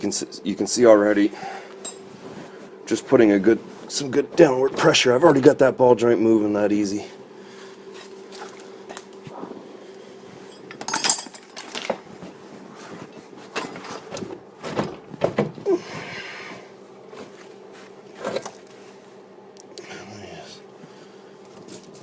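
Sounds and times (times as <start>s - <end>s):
chain and pry bar clanking: 10.5s - 12.0s.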